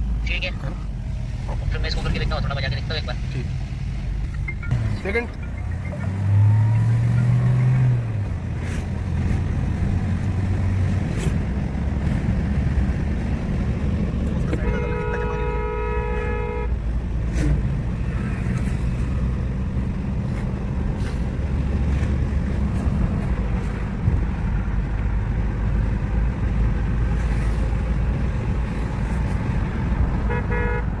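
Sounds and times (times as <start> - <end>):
vehicle engine and road rumble: 0.0 - 31.0
car horn: 14.4 - 16.8, 30.2 - 31.0.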